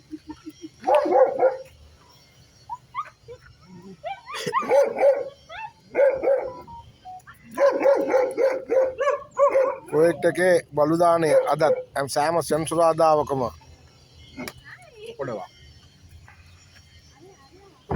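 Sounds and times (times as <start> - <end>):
dogs barking and yelping: 0.2 - 1.8, 2.6 - 12.0
dogs whining: 2.7 - 10.3, 11.3 - 12.0.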